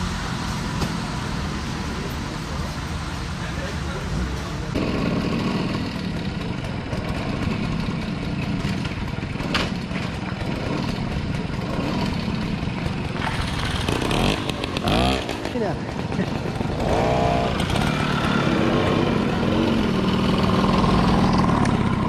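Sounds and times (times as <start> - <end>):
moped engine running: 4.5 - 22.0.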